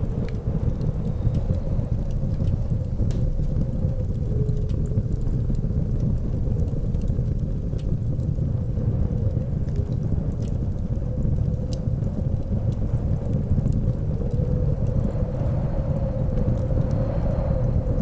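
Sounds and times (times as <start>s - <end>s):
blizzard wind rumbling: 0.0s - 18.0s
wood fire crackling: 0.0s - 18.0s.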